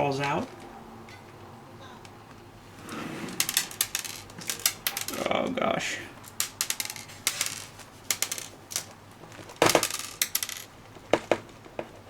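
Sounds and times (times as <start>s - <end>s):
small screws clinking onto desk: 6.3s - 8.9s, 9.6s - 10.7s.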